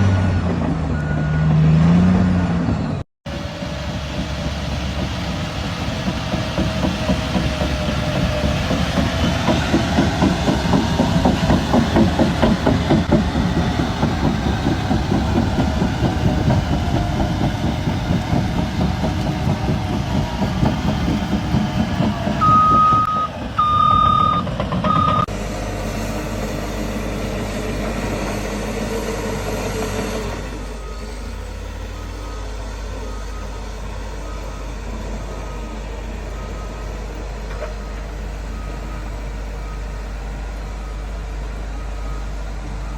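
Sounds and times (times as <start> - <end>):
heavy machine engine clattering: 0.0 - 42.9
backup alarm beeps: 22.4 - 25.3.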